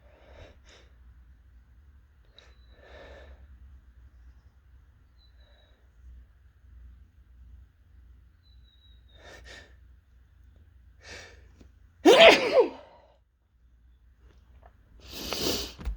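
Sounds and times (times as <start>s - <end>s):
faint breaths in: 2.2s - 3.8s
loud sneeze: 12.0s - 13.0s.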